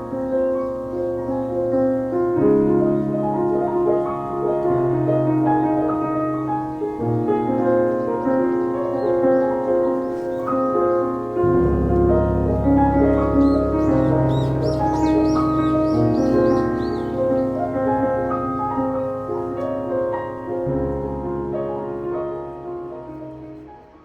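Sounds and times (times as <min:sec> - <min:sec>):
piano chords: 0:00.0 - 0:24.0
deep bass: 0:11.5 - 0:18.4.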